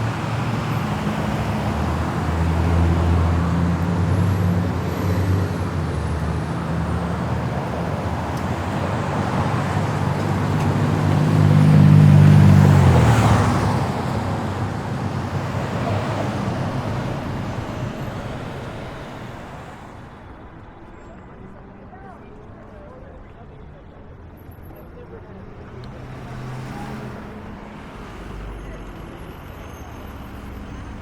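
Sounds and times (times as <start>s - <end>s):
vehicle passing close: 0.0s - 20.0s
vehicle engine running low: 0.0s - 21.3s.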